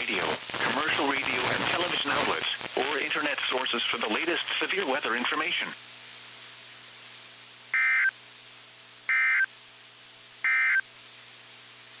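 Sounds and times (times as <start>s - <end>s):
steady radio hiss: 0.0s - 12.0s
short digital data bursts: 7.7s - 10.8s.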